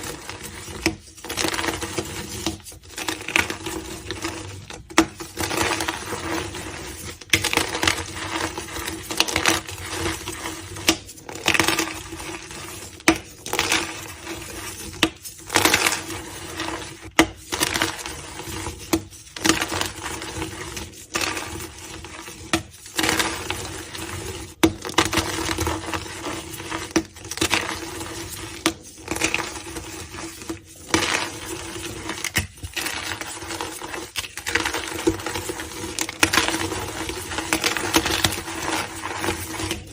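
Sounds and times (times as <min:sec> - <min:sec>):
chalk crunching and cracking: 0:00.0 - 0:39.9.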